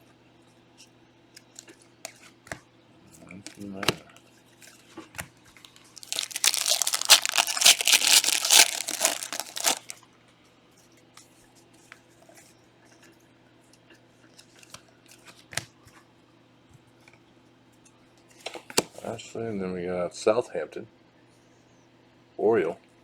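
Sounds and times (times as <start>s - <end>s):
wrapper tearing and crinkling: 5.7s - 10.0s.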